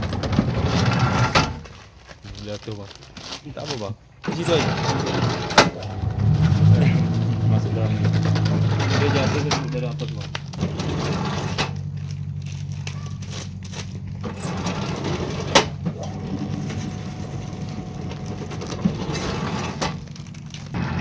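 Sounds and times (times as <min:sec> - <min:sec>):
press machine humming: 0:04.2 - 0:21.0.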